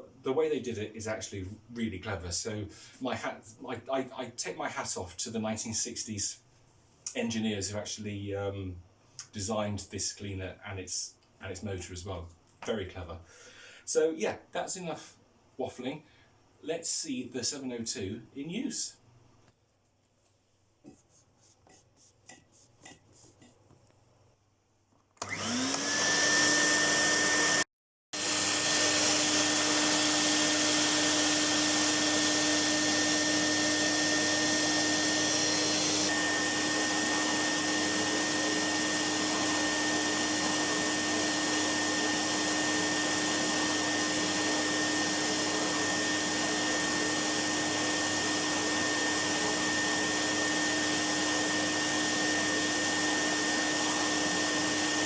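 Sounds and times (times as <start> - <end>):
vacuum cleaner motor whining: 25.2 - 27.6, 28.2 - 55.0.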